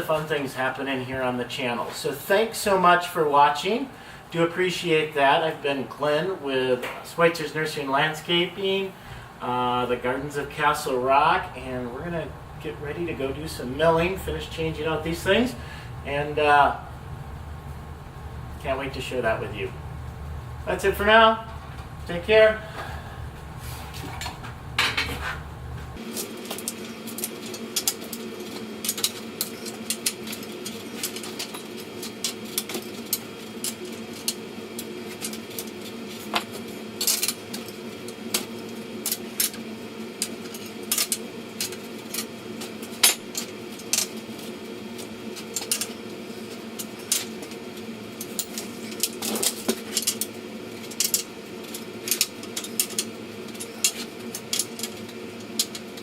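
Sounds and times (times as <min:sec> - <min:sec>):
faint hum: 0:00.0 - 0:26.0.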